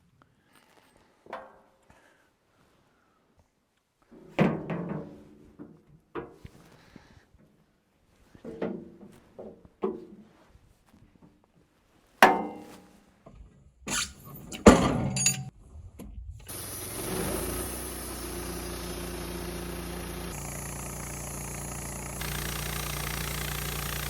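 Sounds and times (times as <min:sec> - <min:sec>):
metal clanks and bangs: 0:12.2 - 0:12.9, 0:13.9 - 0:15.6
sawmill engine running: 0:16.4 - 0:24.0.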